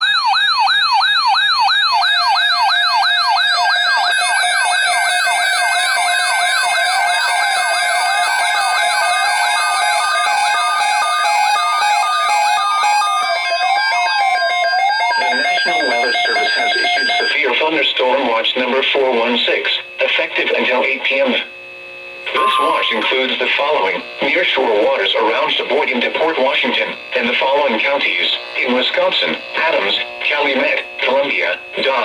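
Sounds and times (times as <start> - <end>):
electronic siren yelp: 0.0 - 17.5, 22.3 - 23.5
siren wails and steady tones: 0.0 - 17.5, 22.3 - 24.2.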